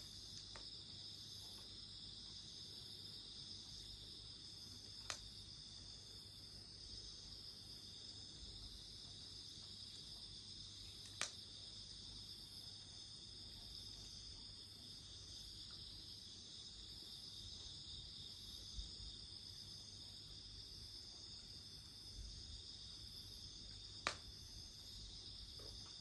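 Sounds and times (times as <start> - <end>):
night insects chirring: 0.0 - 26.0
campfire pop: 5.0 - 5.3, 11.0 - 11.4, 24.0 - 24.4.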